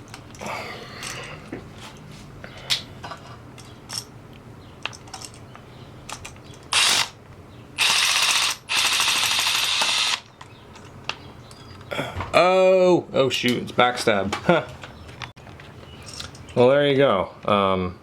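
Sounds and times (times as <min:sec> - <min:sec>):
small clicks of tools and parts: 0:02.7 - 0:06.7
rapid mechanical ratcheting: 0:06.6 - 0:07.2, 0:07.8 - 0:10.3.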